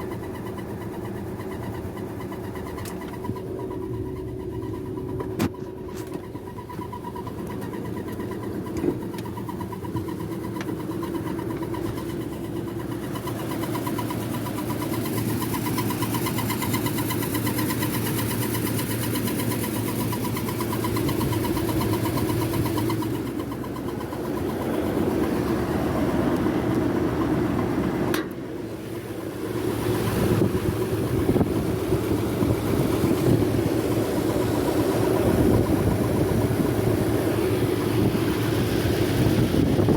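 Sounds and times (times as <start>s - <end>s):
car engine running: 0.0s - 39.9s
thin whine: 0.0s - 39.9s
road noise: 20.8s - 39.9s.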